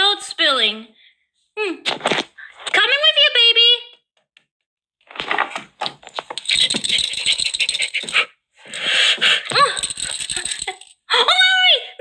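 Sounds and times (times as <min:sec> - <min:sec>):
plastic toy pieces clattering: 0:09.5 - 0:11.0.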